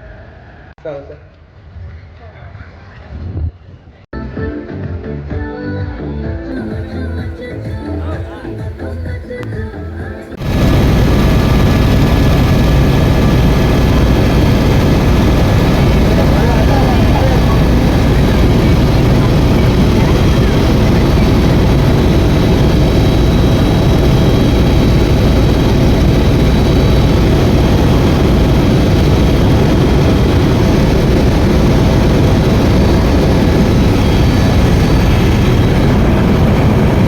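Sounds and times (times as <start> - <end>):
helicopter rotor and engine: 10.4 - 37.0.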